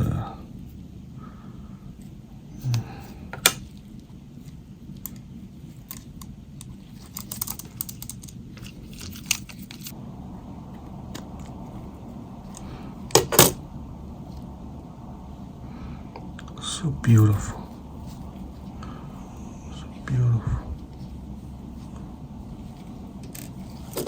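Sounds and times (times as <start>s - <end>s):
small tools clicking on plastic: 5.8s - 9.9s.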